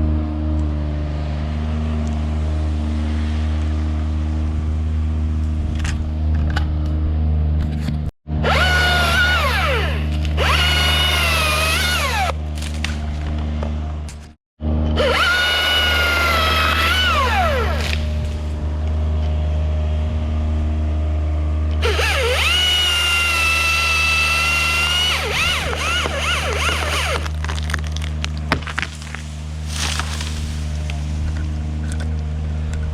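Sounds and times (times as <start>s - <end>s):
electric chainsaw whine: 8.3s - 14.0s, 14.6s - 32.9s.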